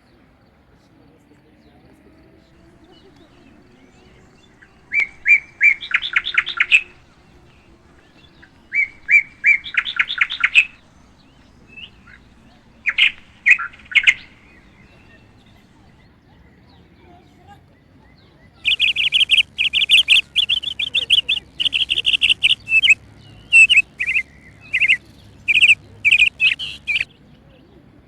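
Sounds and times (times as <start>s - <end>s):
songbird singing: 1.6s - 27.8s.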